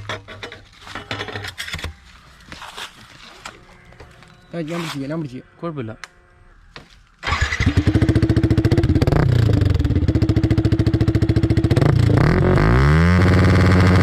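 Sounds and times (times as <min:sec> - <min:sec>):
motorcycle engine revving: 0:07.2 - 0:14.0.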